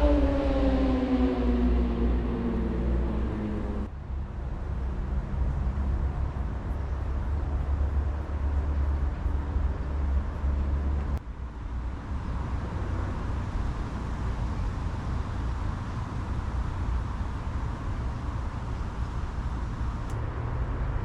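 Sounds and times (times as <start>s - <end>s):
wind buffeting microphone: 0.0s - 3.9s
click: 20.0s - 20.2s.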